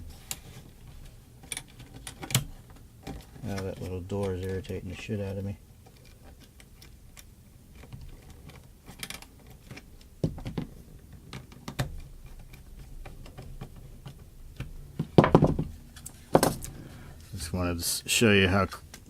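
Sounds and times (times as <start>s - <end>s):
hand tools and plastic parts clicking: 0.1s - 17.3s
louder knocks: 15.1s - 15.7s.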